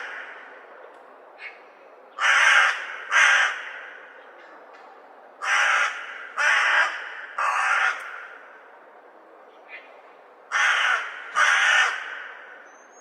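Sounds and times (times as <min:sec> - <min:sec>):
crow cawing: 0:00.0 - 0:00.6, 0:01.4 - 0:04.5, 0:05.4 - 0:08.6, 0:09.7 - 0:12.6.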